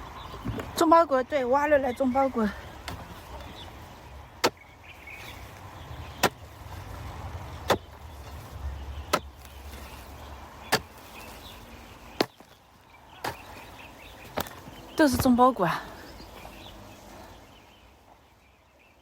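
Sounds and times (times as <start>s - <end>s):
hand tool chopping into soil: 2.8s - 3.8s, 4.4s - 7.0s, 7.6s - 12.6s, 13.2s - 13.6s, 14.2s - 15.6s.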